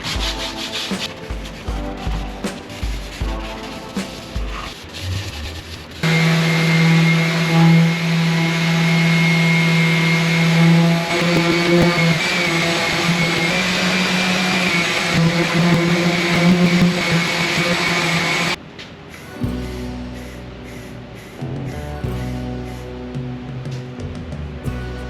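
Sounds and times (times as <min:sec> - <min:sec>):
power tool motor running: 0:06.0 - 0:18.6.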